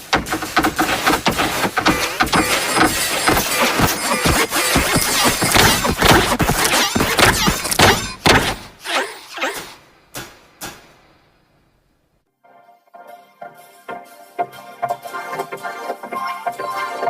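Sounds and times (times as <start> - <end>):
distorted hops and thunks: 0.0 - 8.8
echoing thuds: 0.0 - 8.8.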